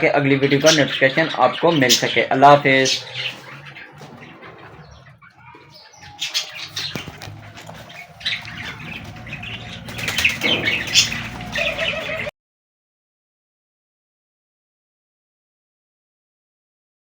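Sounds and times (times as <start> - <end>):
birds chirping: 0.0 - 12.3
birds fluttering wings: 5.6 - 12.3.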